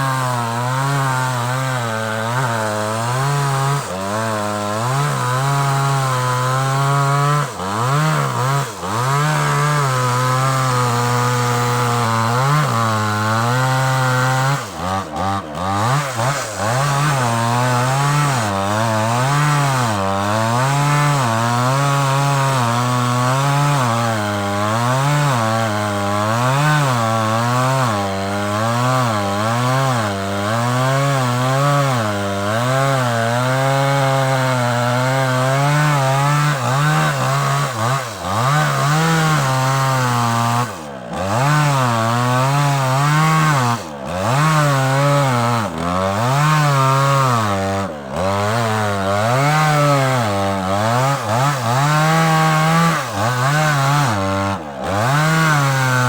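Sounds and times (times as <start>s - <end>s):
chainsaw cutting wood: 0.0s - 56.0s.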